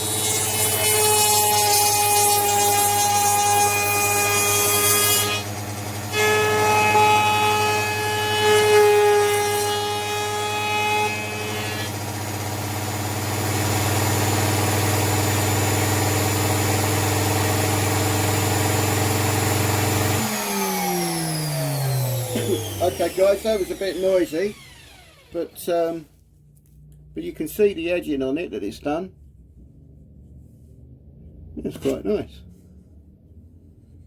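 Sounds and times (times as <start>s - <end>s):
router motor whining: 5.2s - 26.0s.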